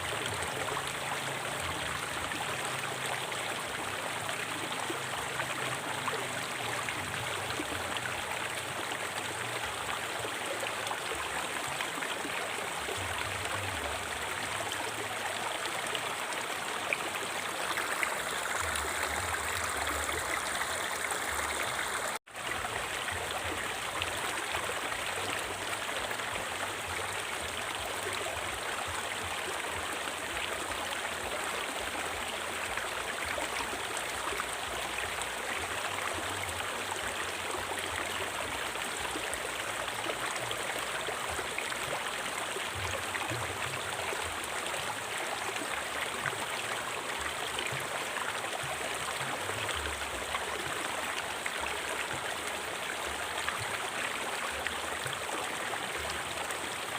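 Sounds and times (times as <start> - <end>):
flowing river water: 0.0 - 56.9.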